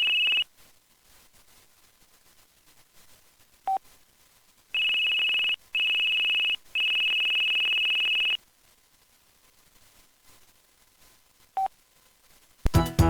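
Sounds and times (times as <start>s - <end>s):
phone ringtone beeping: 0.0s - 0.4s, 4.8s - 8.4s.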